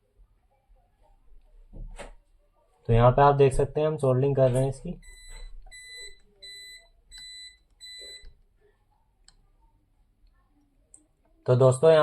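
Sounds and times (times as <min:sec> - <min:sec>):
click: 0:10.2 - 0:11.1.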